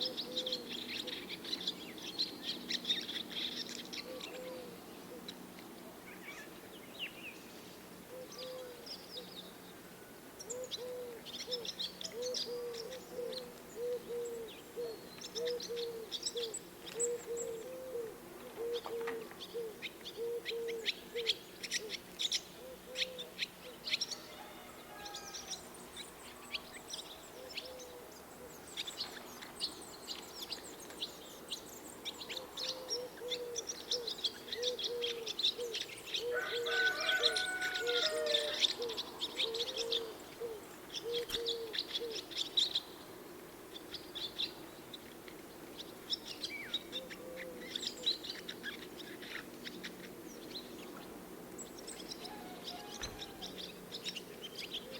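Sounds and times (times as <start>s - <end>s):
bird hooting low notes: 8.1s - 8.9s, 10.4s - 22.0s, 22.6s - 28.8s, 32.2s - 42.3s.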